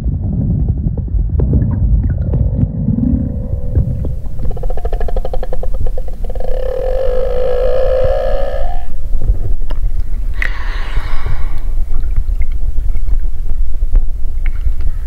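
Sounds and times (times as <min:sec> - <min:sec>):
steady low rumble: 0:00.0 - 0:15.0
whale buzzing moan: 0:03.1 - 0:09.6.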